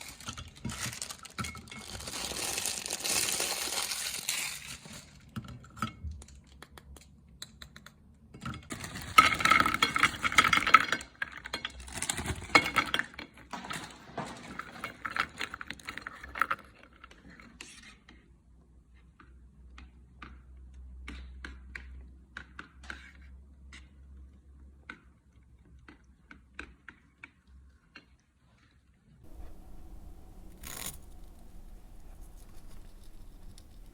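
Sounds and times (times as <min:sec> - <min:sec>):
meringue crunching: 0:29.3 - 0:33.9.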